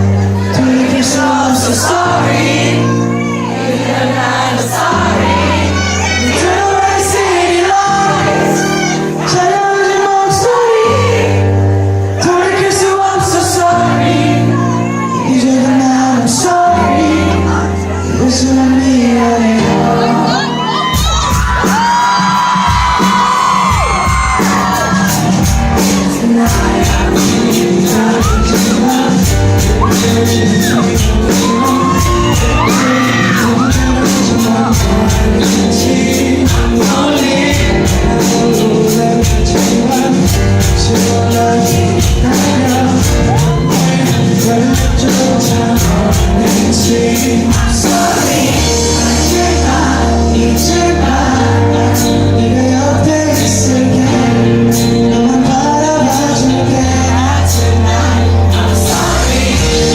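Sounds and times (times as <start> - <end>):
wordless vocals: 0.0 - 21.9, 24.4 - 59.9
live band playing loudly: 0.0 - 59.9
audience shouting: 0.2 - 11.5, 19.9 - 34.9.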